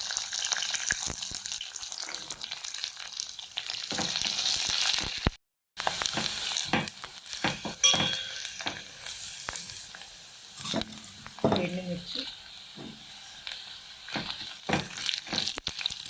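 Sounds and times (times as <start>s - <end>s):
onion sizzling in hot oil: 0.0s - 16.0s
spoon scraping a pan: 5.8s - 16.0s.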